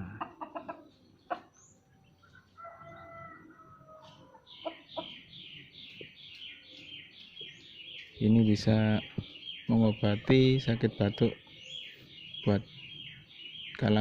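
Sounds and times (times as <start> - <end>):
small bird chirping: 0.0 - 14.0
rooster crowing: 2.6 - 4.5.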